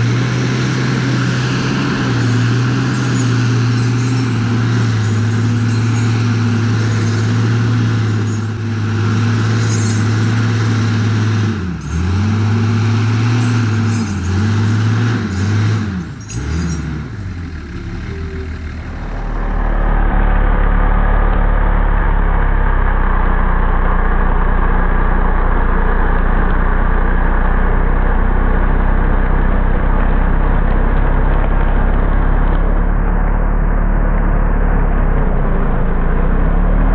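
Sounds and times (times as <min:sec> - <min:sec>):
logging machine engine running hard: 0:00.0 - 0:16.6
deep machine rumble: 0:00.0 - 0:36.9.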